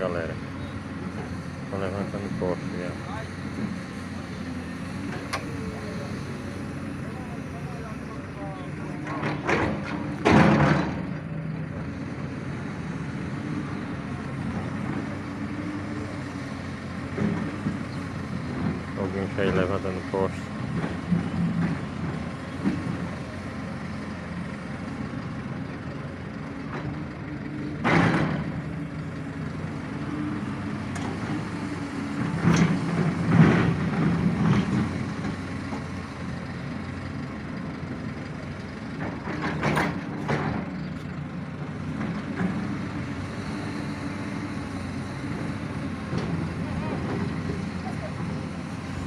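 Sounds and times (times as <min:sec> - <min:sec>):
crane truck engine running: 0:00.0 - 0:49.0
sharp metal knocks and clanks: 0:09.0 - 0:11.1, 0:39.1 - 0:40.7.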